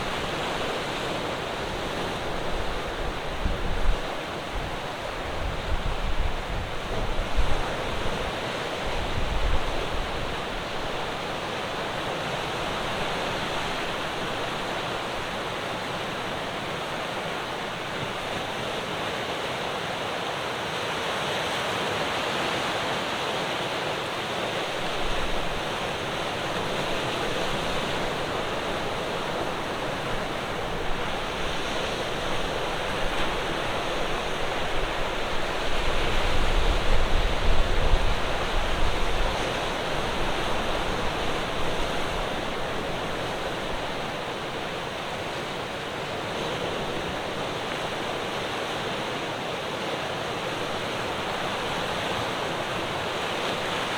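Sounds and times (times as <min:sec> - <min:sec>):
ocean waves breaking: 0:24.4 - 0:53.9.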